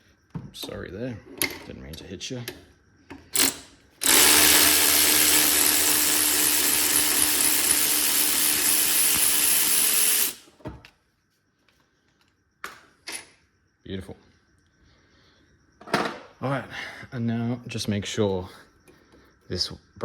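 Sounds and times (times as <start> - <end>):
power tool spinning bolt: 3.4 - 10.5.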